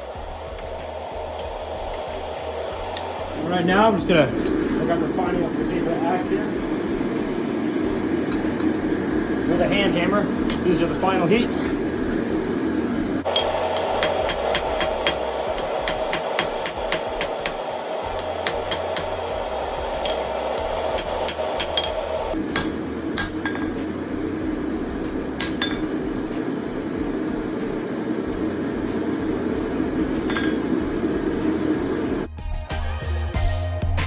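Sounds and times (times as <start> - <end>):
steady background noise: 0.0 - 32.3
hammer striking steel on anvil: 13.2 - 24.0, 25.0 - 26.5, 30.0 - 31.5.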